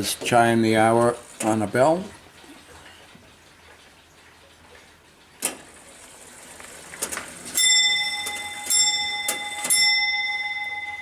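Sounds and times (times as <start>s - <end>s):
clock mechanism clicks: 0.0s - 11.0s
clock bell strokes ringing: 7.4s - 11.0s.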